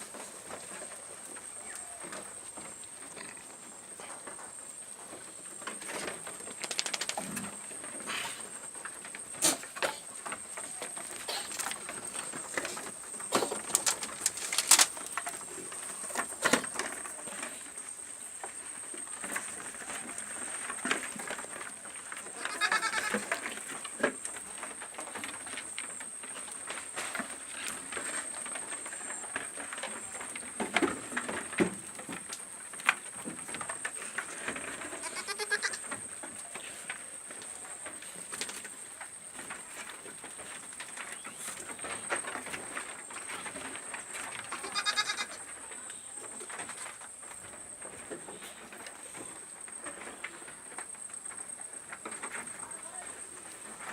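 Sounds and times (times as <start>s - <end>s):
goats bleating: 22.4s - 23.3s, 35.0s - 35.8s, 44.5s - 45.4s.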